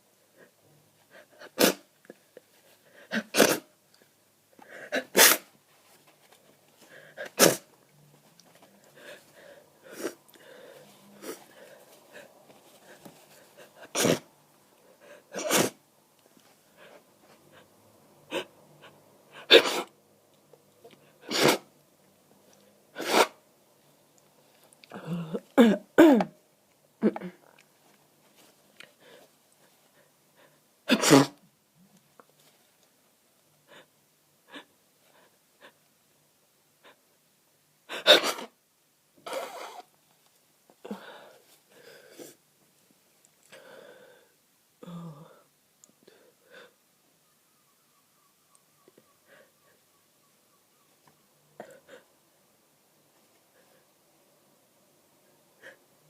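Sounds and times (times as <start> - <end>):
person sneezing: 1.3 - 1.9, 3.0 - 3.7, 4.8 - 5.5, 7.2 - 7.7, 13.6 - 14.3, 15.3 - 15.8, 19.4 - 19.9, 21.2 - 21.7, 22.9 - 23.4, 25.0 - 26.4, 30.9 - 31.4, 37.9 - 38.6, 39.2 - 39.9
person breathing: 8.8 - 13.9, 40.8 - 42.4, 43.4 - 46.8, 49.2 - 49.9.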